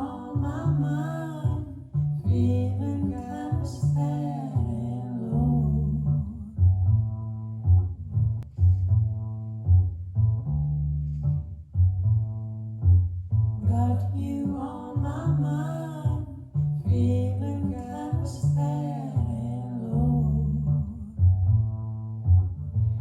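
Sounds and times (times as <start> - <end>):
person singing: 0.0 - 6.4, 13.6 - 16.3, 16.9 - 21.0
plucked bass line: 0.0 - 23.0.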